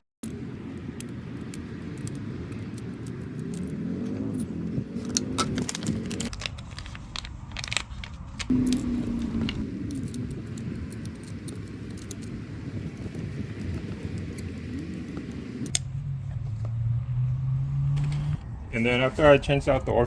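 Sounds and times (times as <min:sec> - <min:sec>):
small plastic parts clicking: 0:00.2 - 0:15.0
steady low rumble: 0:00.2 - 0:20.0.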